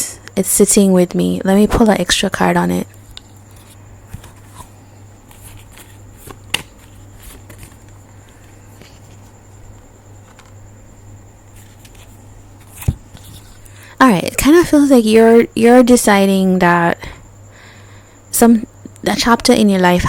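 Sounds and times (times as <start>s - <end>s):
steady low hum: 0.0s - 20.0s
cards rustling: 3.0s - 9.4s, 11.5s - 13.7s.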